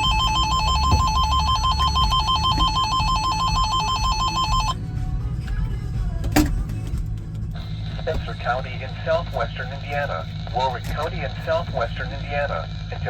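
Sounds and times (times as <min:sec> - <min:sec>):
emergency alert warble tone: 0:00.0 - 0:04.8
vehicle cabin rumble: 0:00.0 - 0:13.0.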